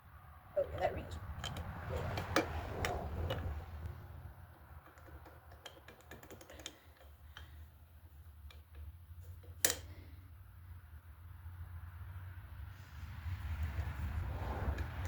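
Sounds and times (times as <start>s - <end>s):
metal parts clicking and tapping: 4.8s - 10.1s.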